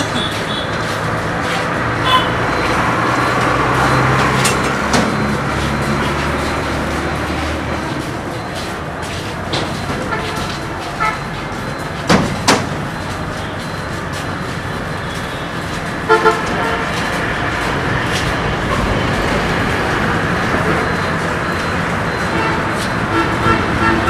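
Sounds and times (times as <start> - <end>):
vehicles running: 0.0 - 24.0
double horn toot: 16.1 - 17.0, 22.3 - 24.0.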